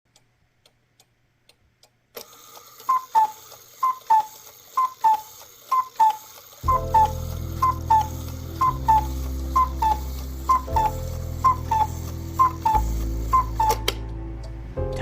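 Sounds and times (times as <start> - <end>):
clock ticking faintly: 0.1 - 15.0
cuckoo clock calling: 2.2 - 14.2.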